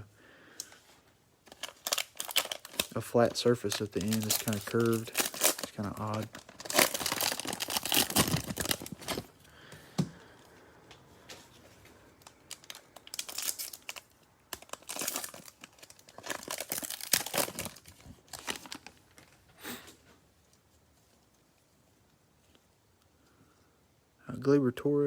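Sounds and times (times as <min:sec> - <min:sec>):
cellophane wrapper crinkling and tearing: 0:01.4 - 0:09.4, 0:12.2 - 0:19.4.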